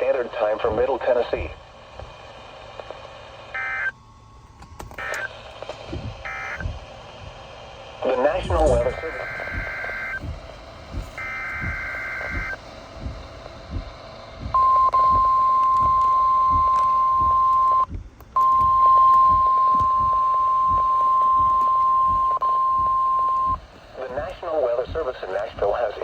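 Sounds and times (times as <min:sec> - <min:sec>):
steady alarm tone: 0:00.0 - 0:26.0
buzzing two-tone data chirp: 0:03.5 - 0:04.0, 0:05.0 - 0:05.4, 0:06.2 - 0:06.7, 0:08.0 - 0:10.4, 0:11.2 - 0:12.6, 0:14.5 - 0:23.6
digital data burst: 0:08.0 - 0:10.2.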